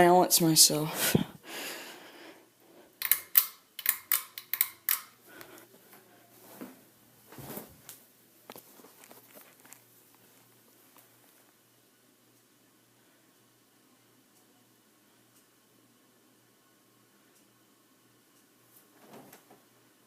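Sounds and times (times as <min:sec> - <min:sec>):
pull-chain switch clicks: 0:03.0 - 0:05.2.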